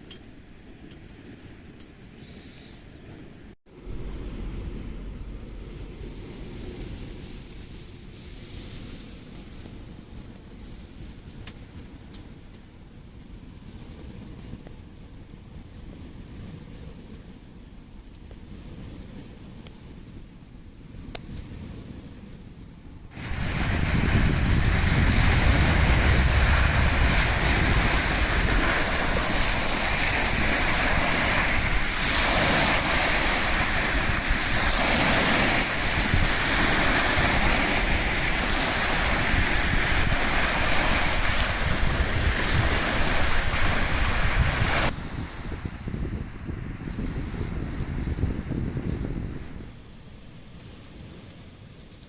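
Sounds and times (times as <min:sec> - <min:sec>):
waves washing onto shore: 0:02.8 - 0:52.0
wind buffeting microphone: 0:02.9 - 0:51.8.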